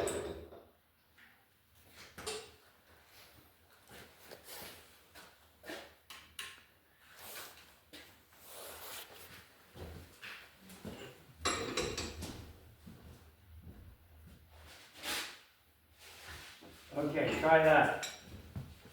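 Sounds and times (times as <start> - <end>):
objects knocking and scraping: 10.2 - 12.5.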